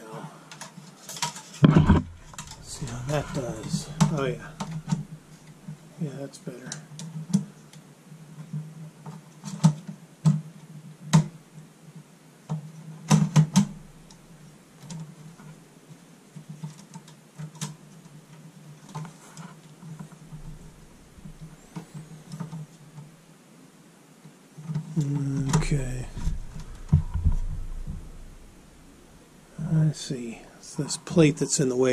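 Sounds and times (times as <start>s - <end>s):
plastic and metal parts knocking: 1.2s - 5.2s, 25.4s - 28.5s.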